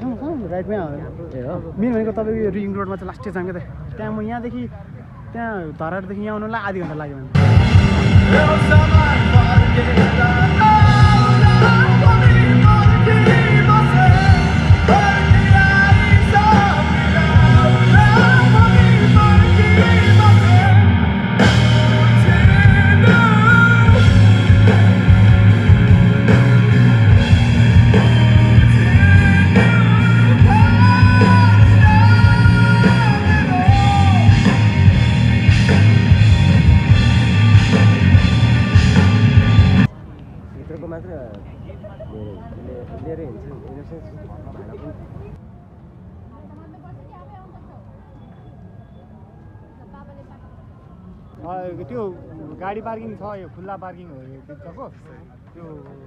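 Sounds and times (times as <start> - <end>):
rock song with singer: 7.3 - 39.9.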